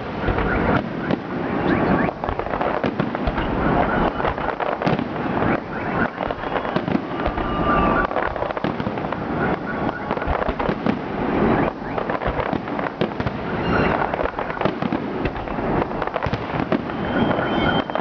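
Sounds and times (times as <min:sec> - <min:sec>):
firework bursts and cracks: 0:00.0 - 0:18.0
firework whistles: 0:00.0 - 0:18.0.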